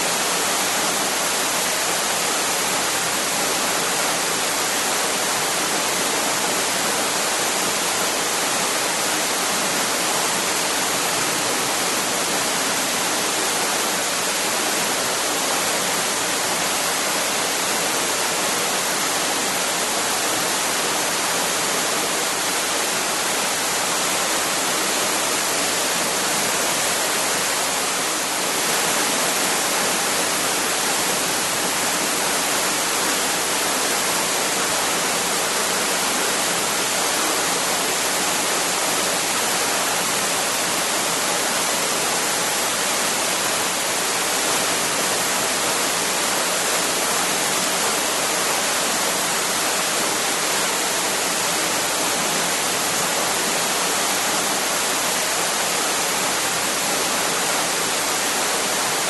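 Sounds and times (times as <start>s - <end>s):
waterfall roaring: 0.0s - 59.0s.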